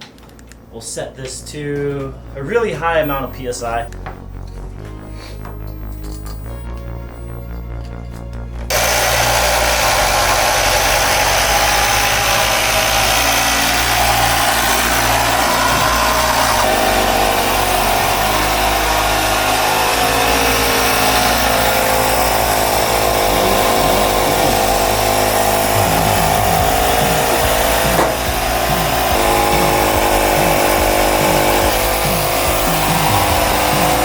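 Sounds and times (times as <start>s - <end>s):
air compressor running: 8.1s - 34.0s.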